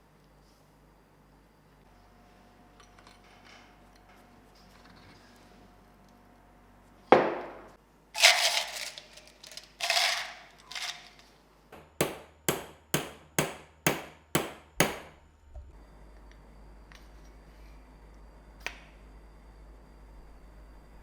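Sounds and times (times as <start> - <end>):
sharp knock on metal: 11.8 - 15.2.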